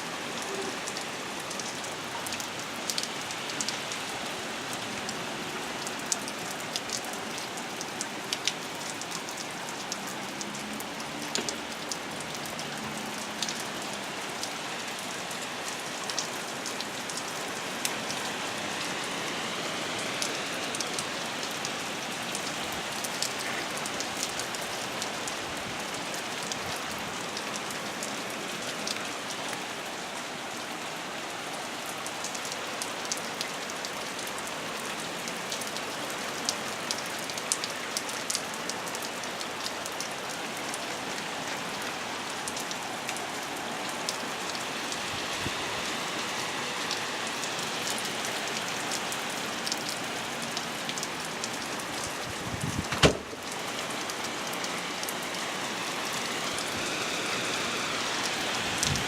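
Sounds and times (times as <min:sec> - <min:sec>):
steady rain: 0:00.0 - 0:59.0
raindrops ticking on hard surface: 0:05.8 - 0:15.0, 0:58.8 - 0:59.0.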